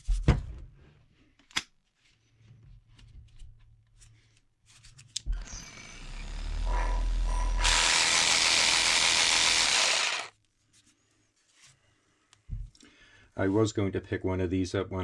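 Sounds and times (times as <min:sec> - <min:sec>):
cordless jigsaw running: 0:05.3 - 0:10.3.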